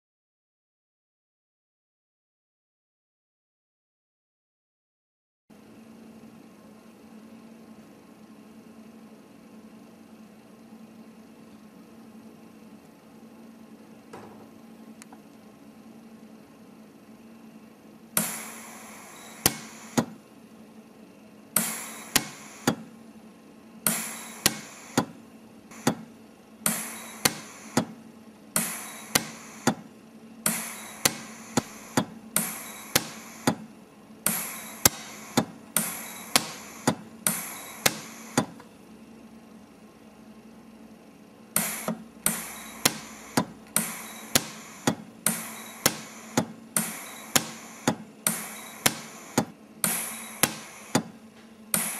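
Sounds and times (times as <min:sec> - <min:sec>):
faint machine hum: 0:05.5 - 0:51.9
pulse welder snapping: 0:18.2 - 0:20.2, 0:21.6 - 0:22.9, 0:23.9 - 0:28.0, 0:28.6 - 0:38.7, 0:41.6 - 0:51.9.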